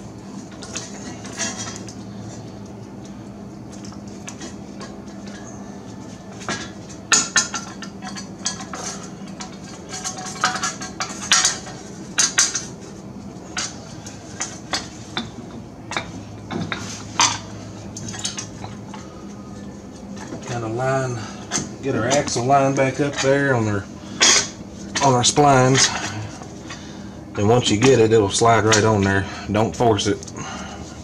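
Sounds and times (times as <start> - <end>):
faint steady hum: 0.0 - 31.0
metal tools clinking: 16.6 - 19.0.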